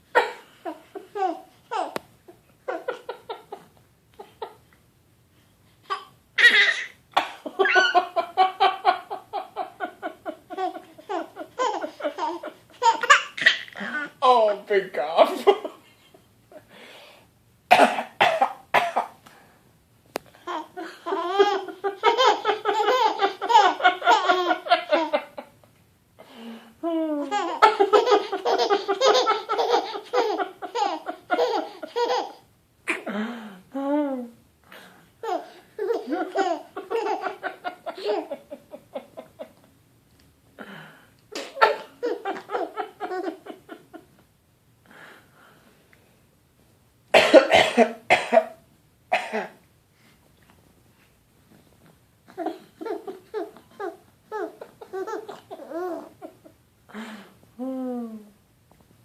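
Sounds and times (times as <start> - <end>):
baby giggling: 0.2 - 2.0, 5.9 - 14.2, 20.5 - 25.3, 27.2 - 33.1, 35.2 - 39.5, 41.4 - 43.8, 52.3 - 56.5
baby fake coughing: 17.7 - 19.1, 47.2 - 48.5.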